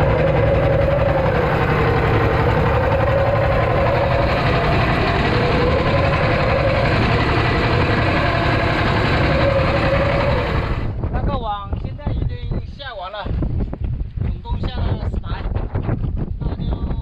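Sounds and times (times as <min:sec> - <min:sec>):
small boat engine running: 0:00.0 - 0:11.0.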